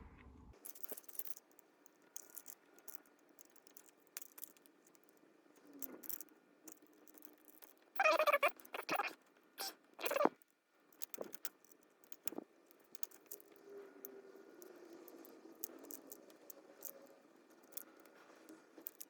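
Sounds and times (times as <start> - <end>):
hand tools clicking and scraping: 5.8 - 10.4.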